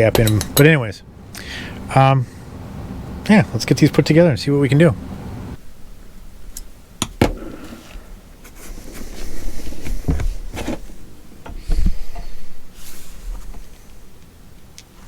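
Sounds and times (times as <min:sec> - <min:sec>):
rustling: 0:05.0 - 0:15.0.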